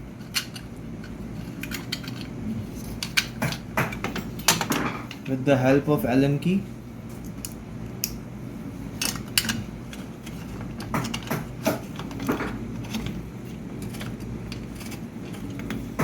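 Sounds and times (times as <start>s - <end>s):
allen key clicking and scraping: 0.2s - 5.3s, 9.0s - 16.0s.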